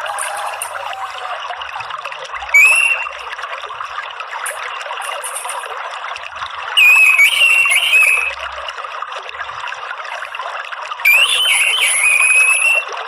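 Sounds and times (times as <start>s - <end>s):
water trickling: 0.0s - 13.0s
bird whistled rising note: 2.6s - 3.2s, 6.8s - 8.4s, 11.1s - 12.9s
faint high chirps: 2.6s - 3.2s, 6.8s - 8.3s, 11.1s - 12.9s.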